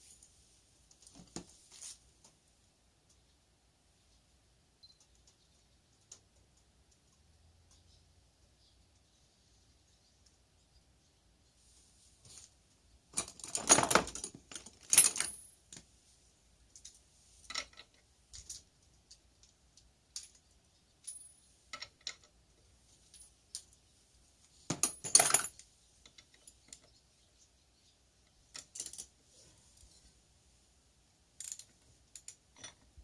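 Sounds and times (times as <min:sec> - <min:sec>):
metal tools clinking and rattling: 0:13.2 - 0:15.8, 0:20.1 - 0:22.4, 0:24.7 - 0:26.9, 0:28.5 - 0:29.1, 0:31.4 - 0:32.9.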